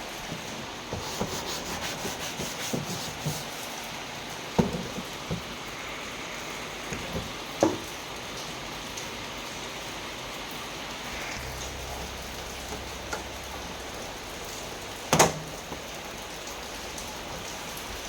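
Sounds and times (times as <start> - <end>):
steady hiss: 0.0 - 18.0
rubbing and scraping handling noise: 0.9 - 4.0.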